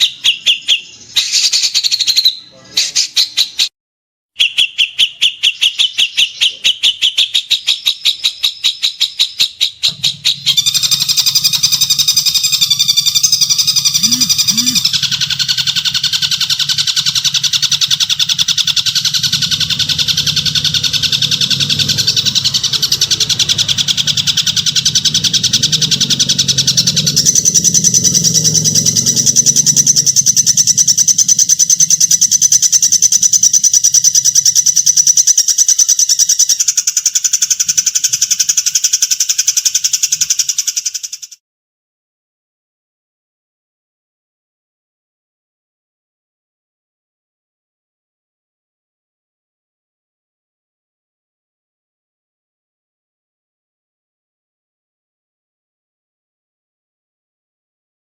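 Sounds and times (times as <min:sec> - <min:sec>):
songbird singing rapid harsh song: 0:04.4 - 0:15.1
low hum: 0:19.0 - 0:32.6.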